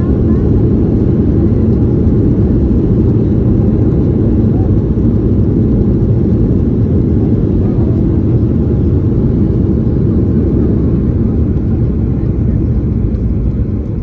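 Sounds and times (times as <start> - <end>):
jet engines rumbling: 0.0 - 14.0.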